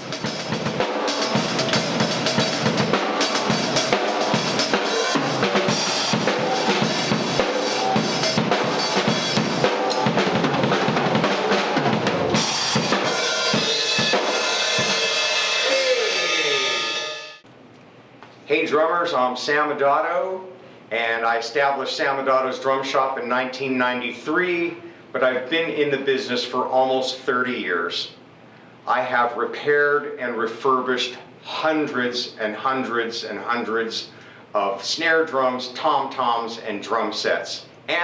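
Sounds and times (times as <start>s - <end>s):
drum kit playing: 0.0s - 17.4s.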